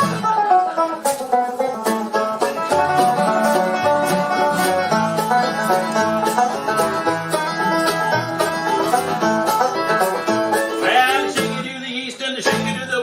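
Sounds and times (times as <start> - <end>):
washtub bass plucking low notes: 0.0 - 11.8
acoustic guitar: 0.0 - 13.0
banjo picking: 0.0 - 13.0
washboard scraping rhythm: 0.0 - 13.0.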